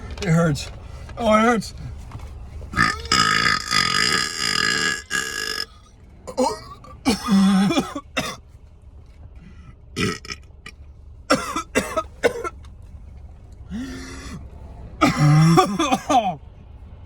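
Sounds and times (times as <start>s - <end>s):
man burping: 2.8s - 8.4s, 10.0s - 10.4s, 11.3s - 12.5s, 13.7s - 14.4s, 15.0s - 16.4s.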